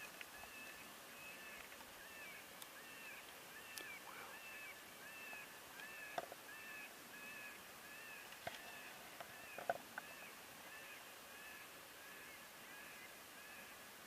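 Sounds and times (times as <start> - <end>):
faint clicks: 2.6 - 4.0.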